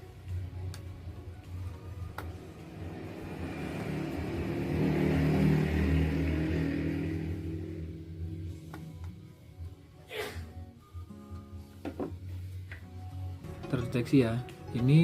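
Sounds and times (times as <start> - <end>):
vehicle engine rumble passing: 1.8 - 9.0.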